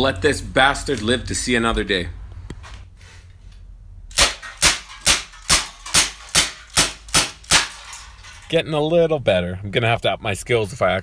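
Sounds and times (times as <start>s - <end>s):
airsoft pistol shots: 4.1s - 7.8s.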